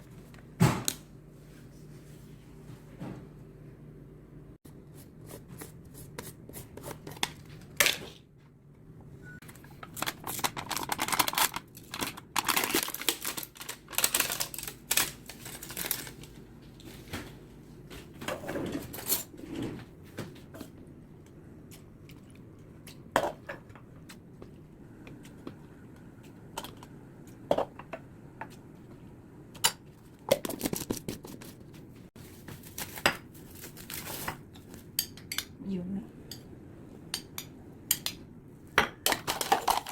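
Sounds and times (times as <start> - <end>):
rustling and crinkling: 30.0 - 34.9.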